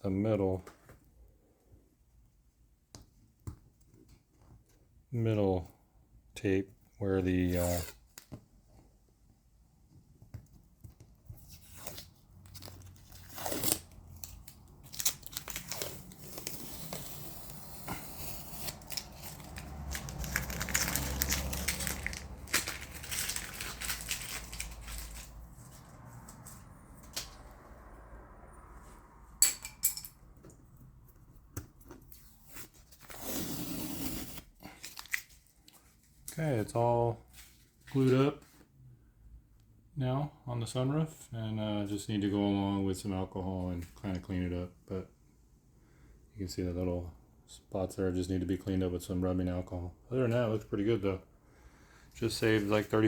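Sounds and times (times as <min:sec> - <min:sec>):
masking tape peeling: 0:11.4 - 0:25.6, 0:32.1 - 0:35.5.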